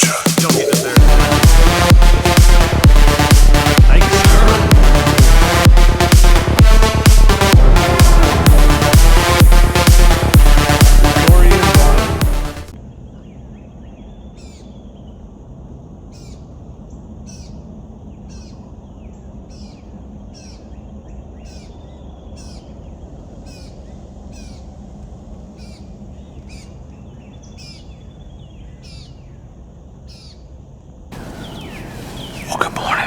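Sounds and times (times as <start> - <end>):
faint bird chirps: 12.9 - 15.3, 25.6 - 30.5, 31.2 - 33.0
low outdoor rumble: 31.2 - 33.0
sharp bird call: 31.2 - 33.0.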